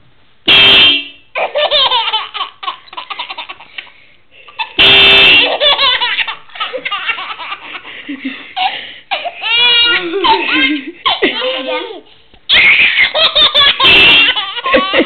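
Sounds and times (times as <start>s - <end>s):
car horn honk: 0.5s - 1.3s, 4.8s - 5.7s, 13.8s - 14.4s
baby laughing: 1.4s - 4.8s, 5.4s - 15.0s.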